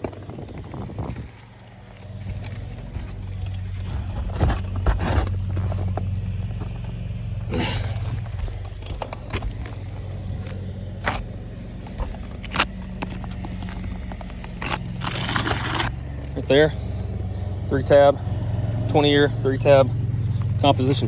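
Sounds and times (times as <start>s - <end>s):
footsteps on shingle roof: 0.0s - 17.5s
steady low hum: 0.0s - 21.0s
scraping rustle: 0.8s - 17.6s.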